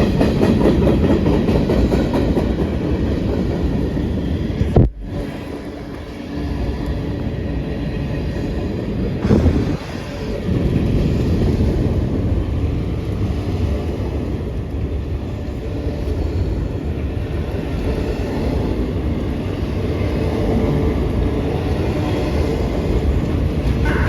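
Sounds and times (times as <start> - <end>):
freight train wheels rumbling: 0.0 - 24.0.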